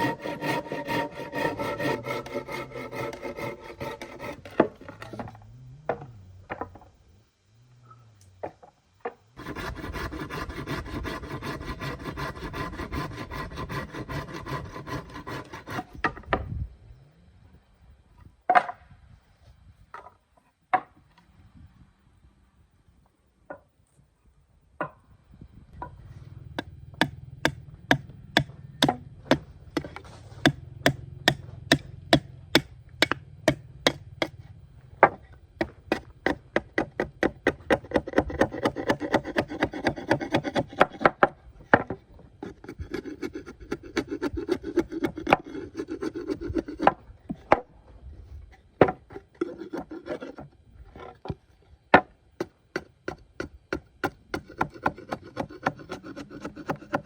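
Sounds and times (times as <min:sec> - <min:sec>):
rasping on wood: 0:00.0 - 0:05.1, 0:09.4 - 0:16.1, 0:27.0 - 0:34.3, 0:35.6 - 0:41.3, 0:42.4 - 0:47.0, 0:49.3 - 0:50.5, 0:52.4 - 0:57.0
tool striking wood: 0:00.0 - 0:05.2, 0:26.5 - 0:34.4, 0:35.0 - 0:45.4, 0:52.0 - 0:57.0.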